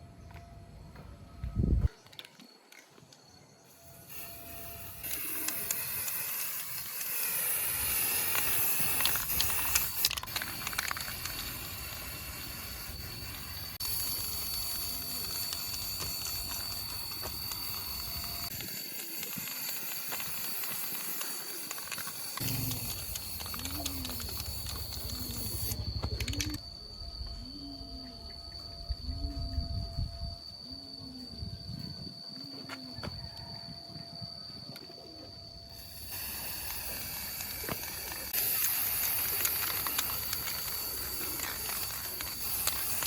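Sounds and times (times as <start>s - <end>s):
thin high whine: 3.3s - 43.0s
hissing spray: 4.1s - 26.4s, 35.8s - 43.0s.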